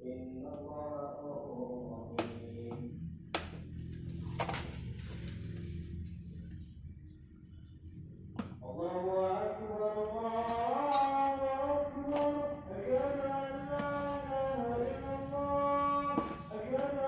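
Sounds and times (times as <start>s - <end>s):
man chanting call to prayer: 0.0s - 3.1s, 8.6s - 17.0s.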